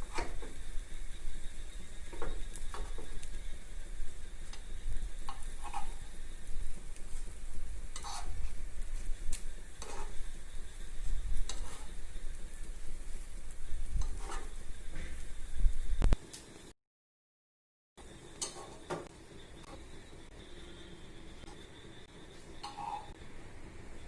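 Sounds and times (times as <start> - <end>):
utensil scraping and tapping pan: 0.0 - 0.6, 2.0 - 3.6, 4.4 - 12.6, 13.9 - 15.2, 18.4 - 19.1, 22.5 - 23.1
food sizzling in a pan: 0.0 - 16.7, 18.0 - 24.0.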